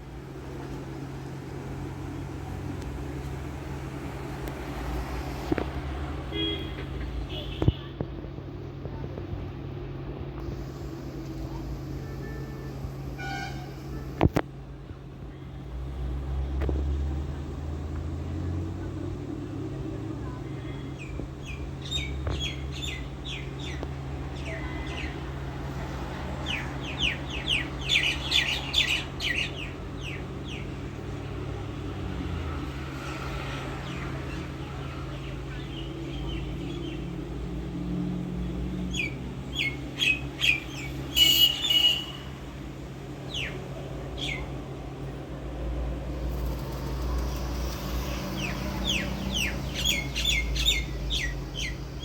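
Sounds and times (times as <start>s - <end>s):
bird chirping: 20.8s - 25.3s, 26.4s - 30.8s, 38.7s - 42.4s, 43.3s - 43.6s, 44.2s - 44.6s, 46.3s - 52.0s.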